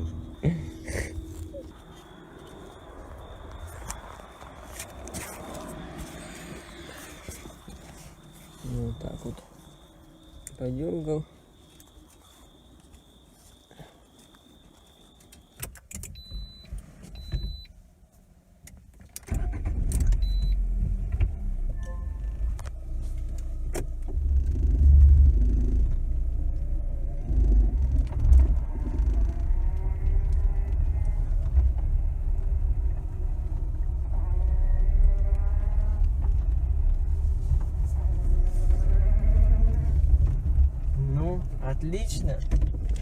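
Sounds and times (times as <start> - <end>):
car engine accelerating: 0.0 - 9.4, 19.4 - 43.0
low road rumble: 0.0 - 43.0
short electronic beeps: 16.2 - 17.7.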